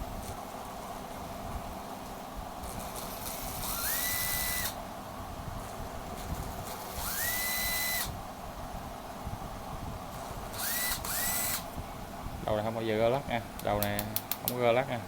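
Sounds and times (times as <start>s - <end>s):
cordless drill motor whining: 3.1s - 4.8s, 6.6s - 8.2s, 10.5s - 11.7s.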